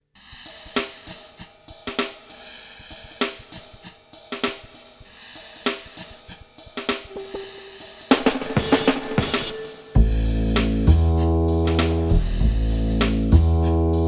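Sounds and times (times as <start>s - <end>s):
drum kit beat: 0.2s - 14.0s
cymbal crashes: 7.0s - 10.8s.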